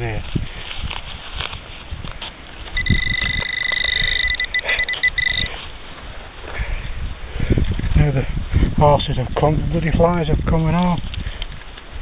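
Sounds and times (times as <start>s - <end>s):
metal detector beeping: 2.8s - 5.5s.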